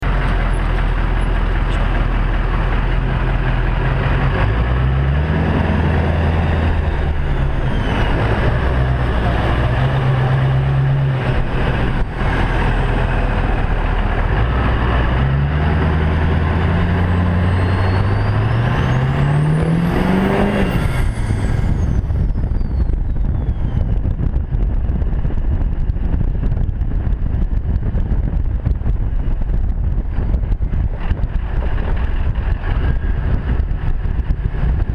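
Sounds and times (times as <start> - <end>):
diesel truck engine pulling hard: 0.0 - 34.9
wind noise: 0.0 - 34.9
turbo whistling whine: 4.2 - 26.9.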